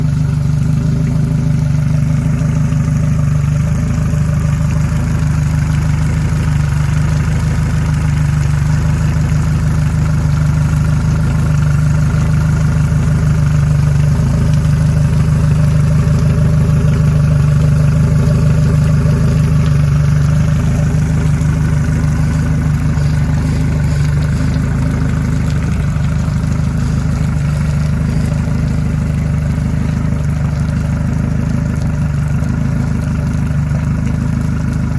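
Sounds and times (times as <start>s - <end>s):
outboard motor idling: 0.0s - 34.9s.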